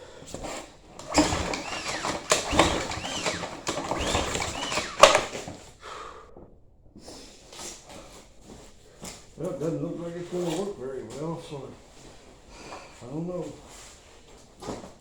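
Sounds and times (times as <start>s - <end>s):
recoil starter rope whir: 1.0s - 5.6s.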